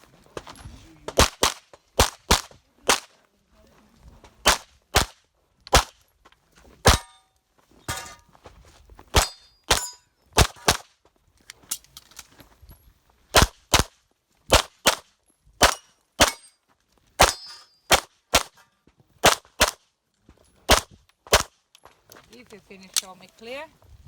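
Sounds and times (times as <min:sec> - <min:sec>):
pistol shots: 0:01.2 - 0:03.1, 0:04.4 - 0:05.9, 0:14.5 - 0:15.0, 0:15.6 - 0:16.5, 0:17.2 - 0:18.6, 0:19.2 - 0:19.8, 0:20.7 - 0:21.5.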